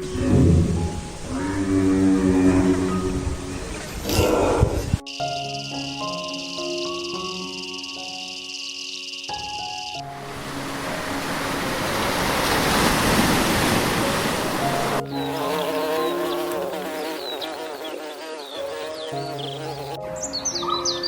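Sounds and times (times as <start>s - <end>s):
insect buzzing: 0.0s - 11.3s, 11.9s - 20.0s
birds chirping: 14.4s - 21.0s.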